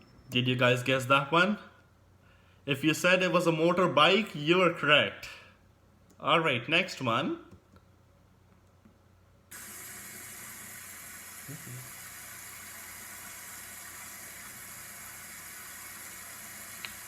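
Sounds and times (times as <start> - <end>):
shower water spraying: 9.5 - 17.0.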